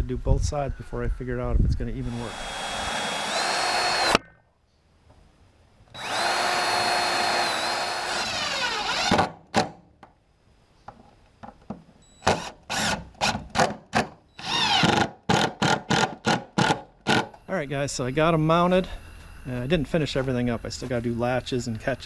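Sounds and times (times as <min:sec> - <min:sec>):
power drill driving screws: 0:02.0 - 0:04.2, 0:05.9 - 0:09.4, 0:12.2 - 0:13.7, 0:14.4 - 0:17.2.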